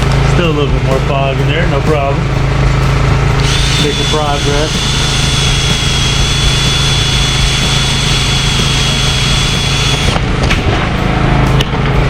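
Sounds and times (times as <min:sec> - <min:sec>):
electric sander whining: 0:03.4 - 0:10.3.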